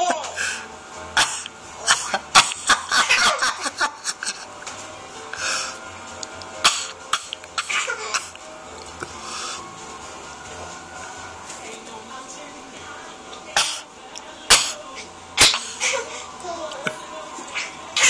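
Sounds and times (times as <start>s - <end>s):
child coughing: 1.2s - 3.9s, 6.6s - 8.3s, 15.4s - 16.2s
child giggling: 2.7s - 4.5s.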